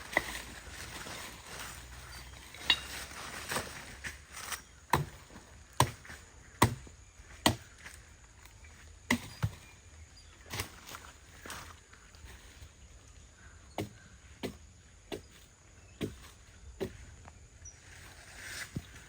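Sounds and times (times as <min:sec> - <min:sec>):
axe chopping wood: 0:04.9 - 0:07.7, 0:09.1 - 0:09.6, 0:13.8 - 0:15.4, 0:16.0 - 0:17.1.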